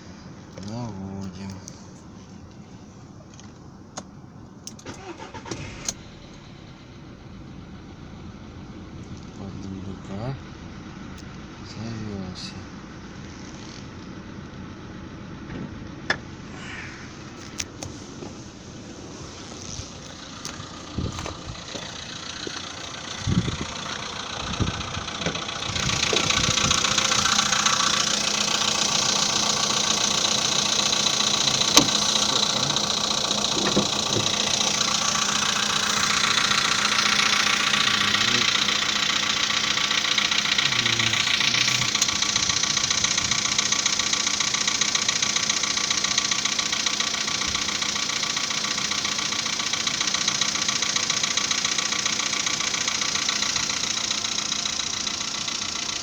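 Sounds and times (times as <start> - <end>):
car engine idling with ticking: 0.0 - 56.0.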